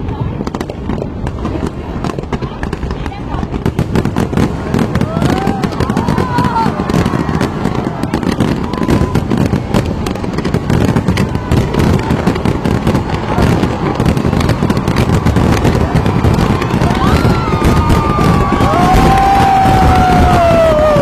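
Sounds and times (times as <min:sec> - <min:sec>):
fireworks crackling: 0:00.0 - 0:21.0.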